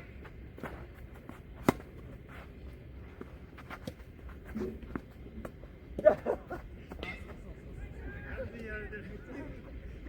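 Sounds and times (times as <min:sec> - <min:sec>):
tennis ball struck by rackets: 0:01.6 - 0:01.9.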